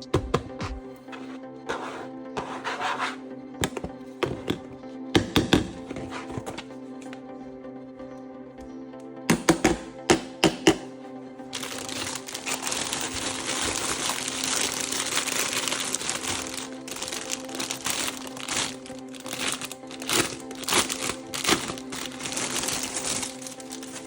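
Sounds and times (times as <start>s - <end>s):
background music: 0.0s - 24.0s
plastic packaging crinkling: 11.6s - 24.0s.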